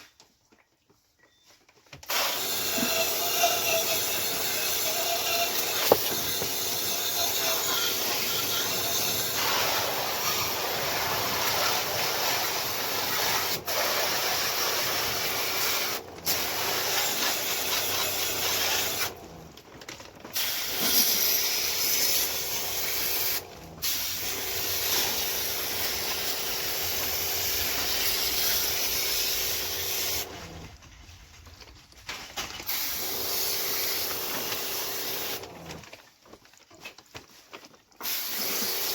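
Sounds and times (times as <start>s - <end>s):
high-pressure spray hissing: 2.1s - 19.1s, 20.4s - 30.3s, 32.7s - 35.4s, 38.0s - 38.9s.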